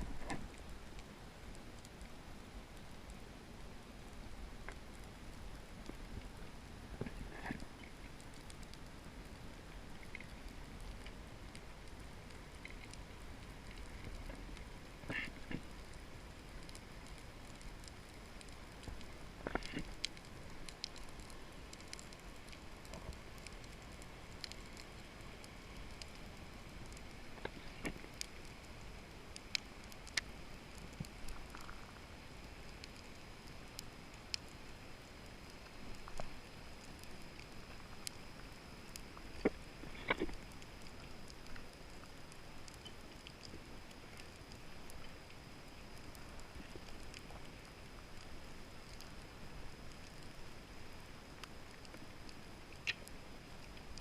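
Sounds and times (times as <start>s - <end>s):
sharp clicks and crackles: 0.0s - 54.0s.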